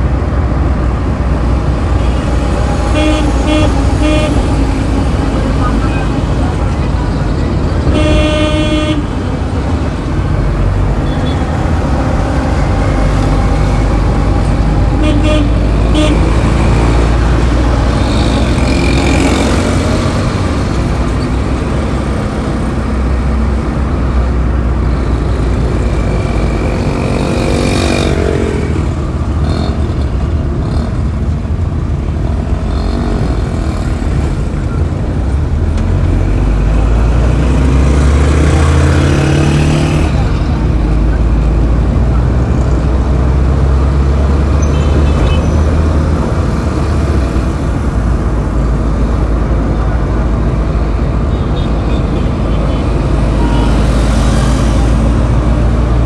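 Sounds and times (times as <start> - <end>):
road traffic rumble: 0.0 - 56.0
car horn toot: 1.8 - 9.8, 10.8 - 12.0, 12.6 - 19.7, 44.5 - 45.9, 51.3 - 54.5.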